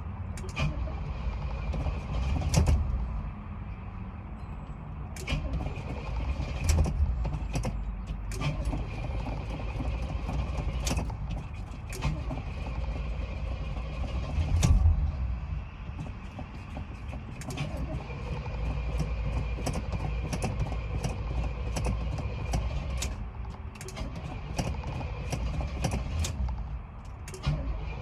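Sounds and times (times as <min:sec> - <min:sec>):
car engine rumbling: 0:00.0 - 0:28.0
sharp clicks: 0:18.7 - 0:27.6.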